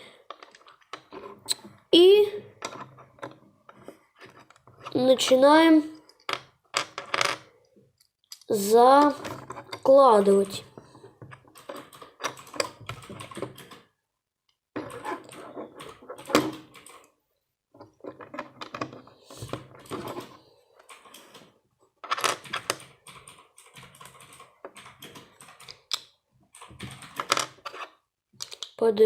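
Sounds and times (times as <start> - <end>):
plastic bricks clattering: 28.4 - 28.8.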